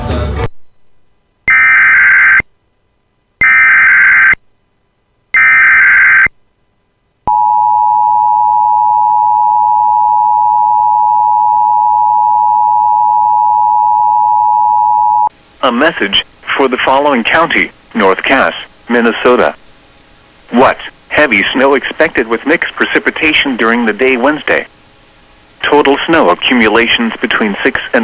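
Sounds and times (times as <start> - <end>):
digital data tone bursts: 1.5 - 2.4, 3.4 - 4.4, 5.4 - 6.3.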